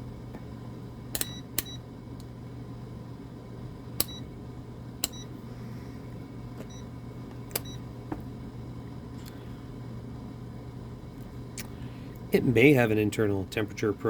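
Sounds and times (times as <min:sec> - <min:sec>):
multimeter dial clicking: 0:01.2 - 0:01.8, 0:04.0 - 0:04.2, 0:05.0 - 0:05.2.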